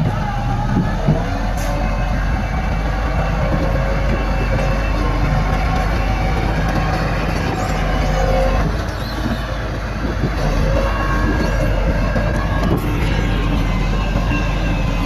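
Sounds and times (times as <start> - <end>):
diesel earthmoving machinery engine: 0.0 - 15.0.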